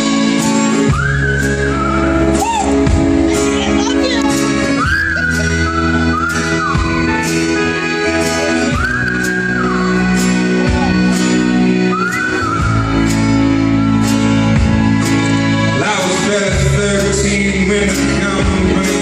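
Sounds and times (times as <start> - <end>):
drums with steady cymbal beat: 0.0 - 8.4
bass: 0.0 - 19.0
lead line with bending notes: 0.0 - 19.0.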